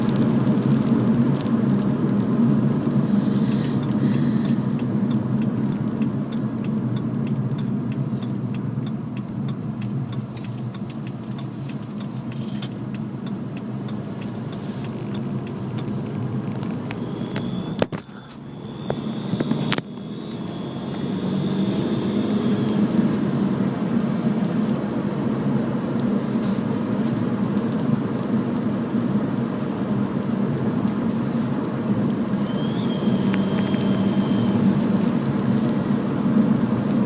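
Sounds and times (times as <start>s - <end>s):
diesel engine droning while driving: 0.0s - 37.0s
faint high whistle: 17.0s - 22.7s, 32.4s - 34.6s.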